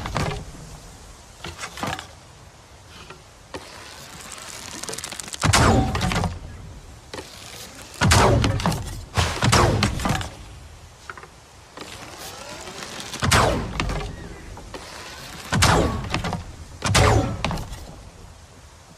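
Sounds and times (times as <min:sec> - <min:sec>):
bow shots: 0:03.8 - 0:06.6, 0:07.2 - 0:10.5, 0:11.8 - 0:14.2, 0:14.8 - 0:18.0.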